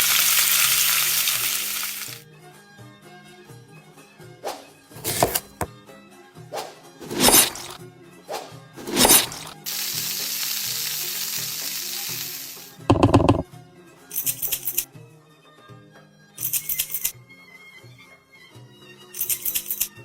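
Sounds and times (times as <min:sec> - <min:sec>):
food sizzling in a pan: 0:00.0 - 0:02.2, 0:07.1 - 0:07.8, 0:08.8 - 0:13.4
background music: 0:00.0 - 0:20.0.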